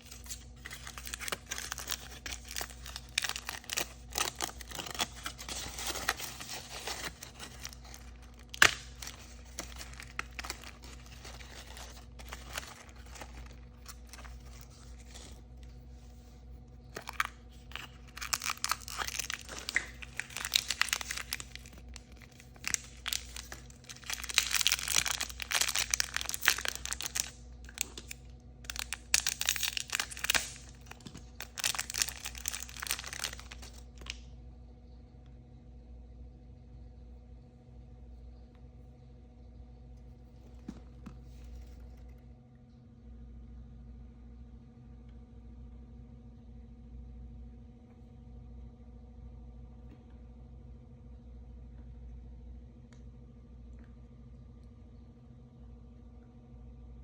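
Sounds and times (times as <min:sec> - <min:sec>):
packaging rustling and tearing: 0:00.0 - 0:15.8, 0:16.9 - 0:34.2.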